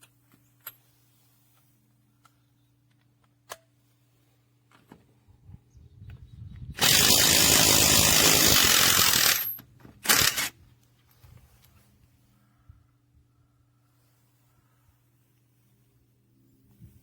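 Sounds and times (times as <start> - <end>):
impact wrench running: 6.8 - 10.5.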